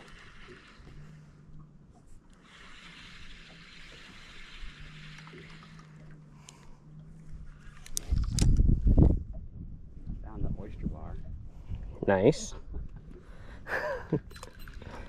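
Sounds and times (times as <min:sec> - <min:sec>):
low hum: 0:00.0 - 0:15.0
trickling and lapping water: 0:00.0 - 0:15.0
wind buffeting microphone: 0:07.3 - 0:14.3.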